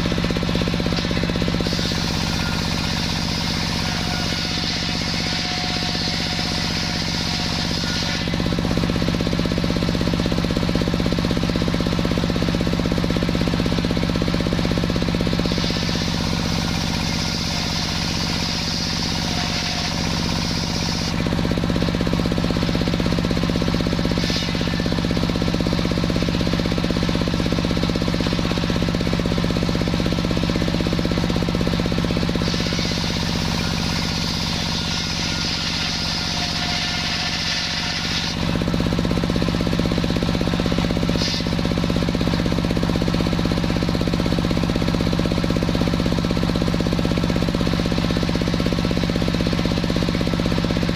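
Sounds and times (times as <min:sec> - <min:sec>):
sawmill saw drone: 0:00.0 - 0:50.9
blade hissing through wood: 0:00.9 - 0:08.6, 0:15.2 - 0:21.3, 0:23.7 - 0:25.3, 0:32.2 - 0:38.7, 0:40.5 - 0:42.0.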